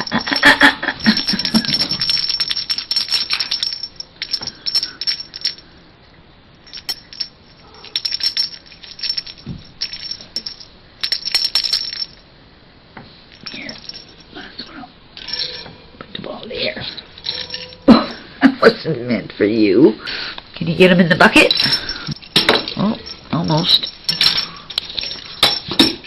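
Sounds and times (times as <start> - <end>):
toy ball rattling and clicking: 0.0 - 5.6.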